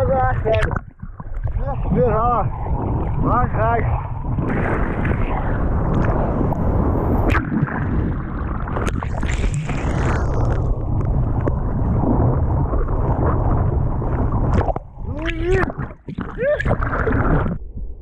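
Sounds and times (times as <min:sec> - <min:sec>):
wind buffeting microphone: 0:00.0 - 0:08.8
sea water sloshing: 0:00.0 - 0:17.6.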